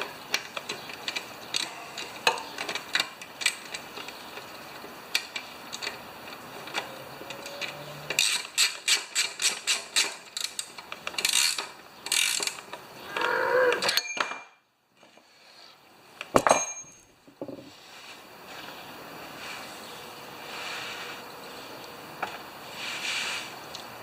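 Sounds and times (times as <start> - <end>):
ratchet wrench clicking: 7.3 - 12.8.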